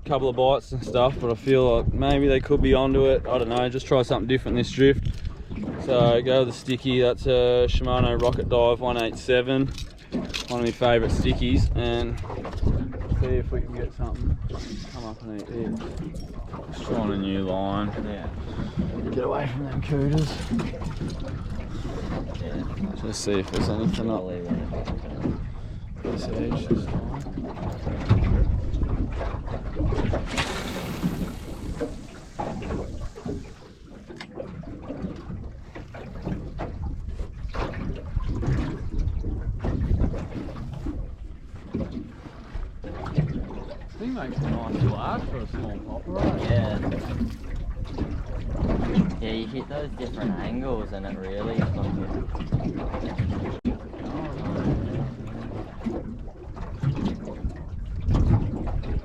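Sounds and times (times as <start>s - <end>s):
water lapping against boat hull: 0.0s - 59.0s
wind buffeting microphone: 0.0s - 59.0s
short hissing rush: 30.3s - 33.6s.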